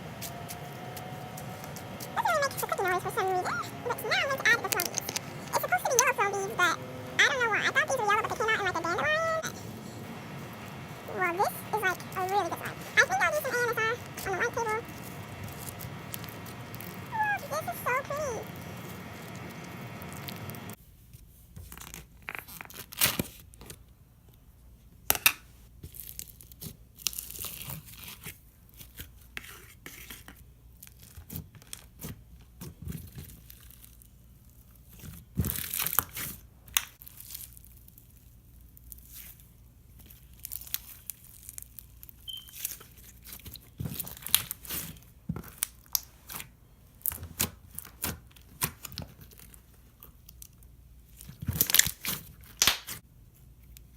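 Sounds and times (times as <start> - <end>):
slime squishing with sticky pops: 30.0 - 53.0.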